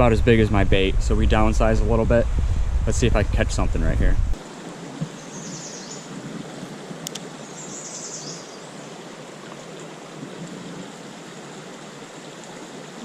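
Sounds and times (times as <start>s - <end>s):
small river running: 4.3s - 13.0s
faint sharp click: 7.0s - 7.2s.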